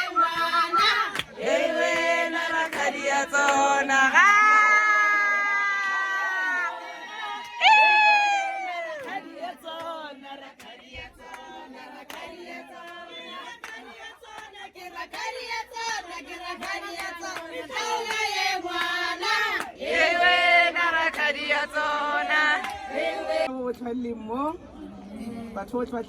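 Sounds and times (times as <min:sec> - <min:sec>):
group of people singing: 0:00.0 - 0:07.6, 0:08.6 - 0:23.5
hands clapping: 0:00.2 - 0:04.5, 0:08.9 - 0:10.0, 0:10.6 - 0:13.0, 0:13.6 - 0:19.8, 0:21.0 - 0:21.3, 0:22.6 - 0:22.8.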